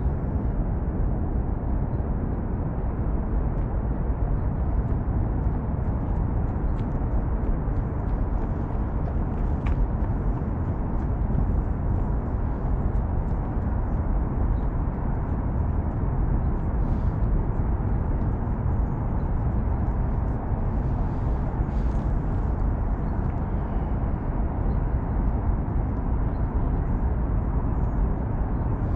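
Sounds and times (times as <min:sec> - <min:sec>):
low rumble of traffic: 0:00.0 - 0:28.9.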